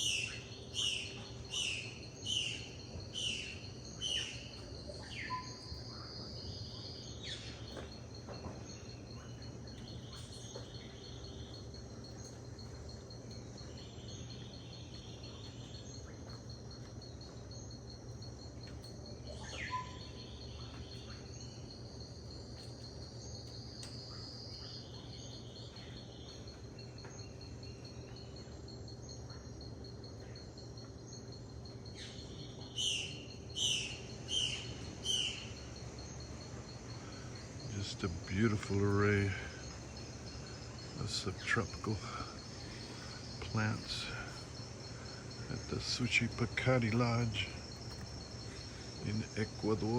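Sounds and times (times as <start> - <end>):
birds calling: 0.0 - 49.9
pulsing insect trill: 0.0 - 49.9.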